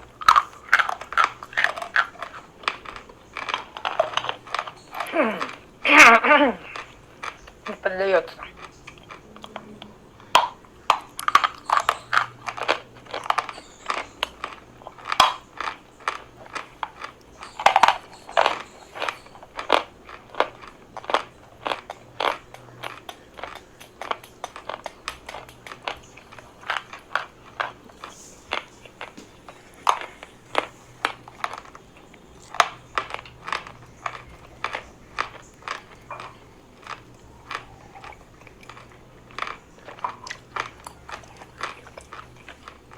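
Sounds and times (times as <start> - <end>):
chalk being chewed: 0.0 - 42.9.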